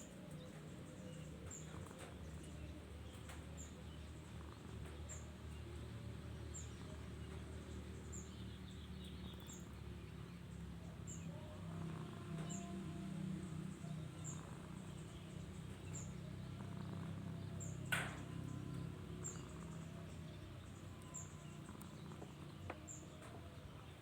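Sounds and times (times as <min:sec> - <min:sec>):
cat snoring: 0:11.3 - 0:20.1, 0:20.8 - 0:22.8.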